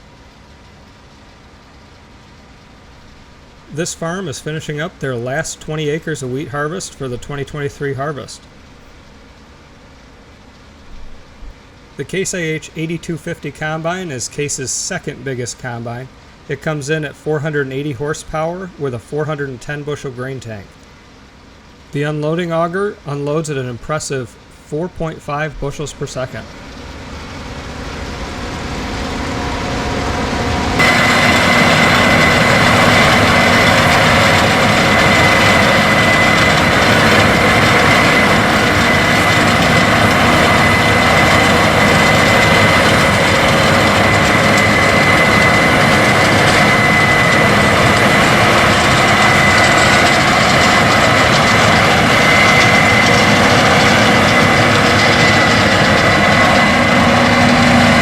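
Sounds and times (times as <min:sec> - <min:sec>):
combine harvester running: 0:00.0 - 0:58.0
high machine whine: 0:00.0 - 0:58.0.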